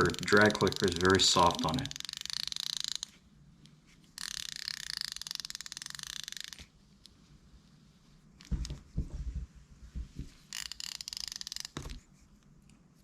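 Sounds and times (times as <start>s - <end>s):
fishing reel clicker: 0.0s - 3.1s, 4.2s - 6.7s, 10.5s - 11.9s.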